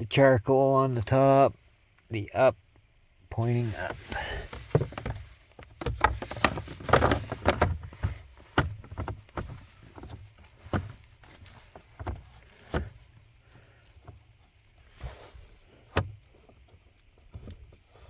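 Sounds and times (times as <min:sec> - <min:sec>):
plastic clicks and scrapes: 0:04.5 - 0:12.9.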